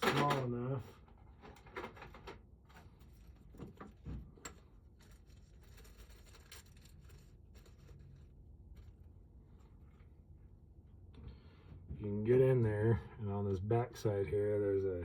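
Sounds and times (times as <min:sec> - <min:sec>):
low room noise: 0:00.0 - 0:15.0.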